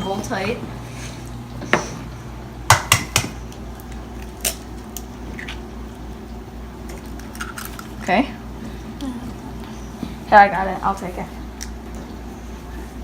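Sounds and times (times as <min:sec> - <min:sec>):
egg knocking on bowl rim: 0:02.7 - 0:03.4.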